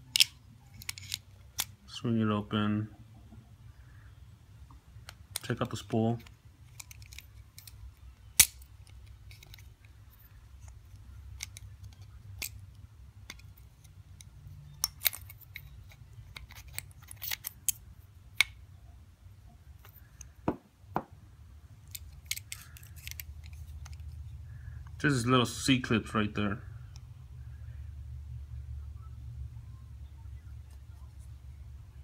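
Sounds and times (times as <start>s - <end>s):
small metal parts clicking: 0.0s - 1.8s, 6.6s - 17.8s, 21.8s - 24.2s
steady low hum: 0.0s - 32.0s.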